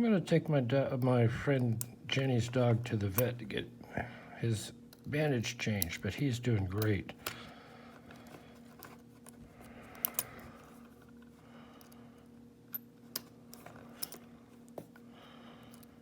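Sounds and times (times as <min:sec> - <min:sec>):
lock pick clicking and scraping: 0:08.2 - 0:12.0, 0:12.7 - 0:14.8.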